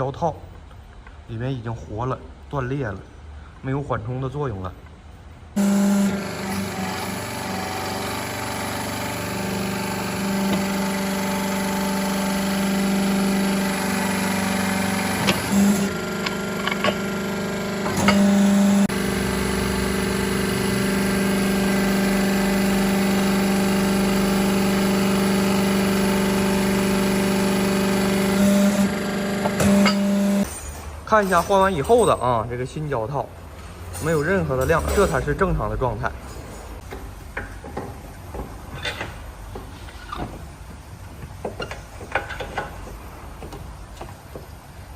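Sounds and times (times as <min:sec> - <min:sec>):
motor humming: 0:05.6 - 0:30.5.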